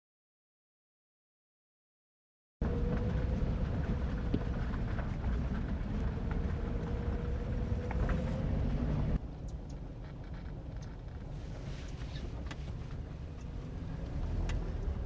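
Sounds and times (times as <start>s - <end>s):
vehicle rumble: 2.6s - 15.0s
light clicks and rattles: 9.4s - 15.0s.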